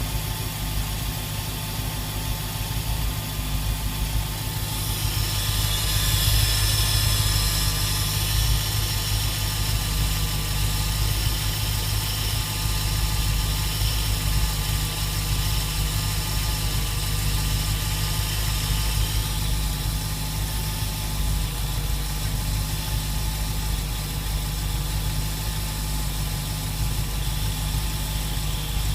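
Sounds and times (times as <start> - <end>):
car engine idling: 0.0 - 28.9
high hissing noise: 2.5 - 12.3.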